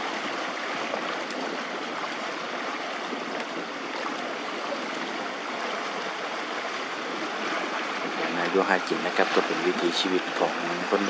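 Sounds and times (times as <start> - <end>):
floodwater rushing down a creek: 0.0 - 11.0.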